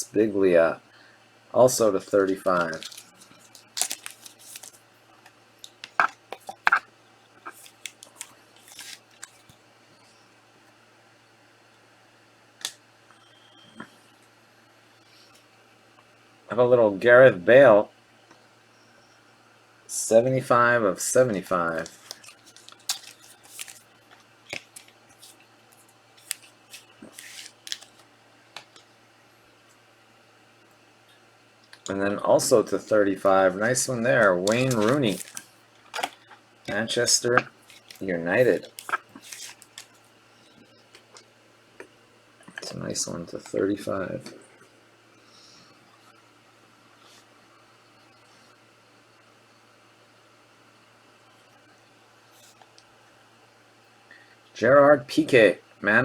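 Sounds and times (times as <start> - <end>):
trading cards clicking and swishing: 21.8 - 28.8, 34.2 - 40.0
trading cards clicking: 26.2 - 28.8, 34.4 - 36.2.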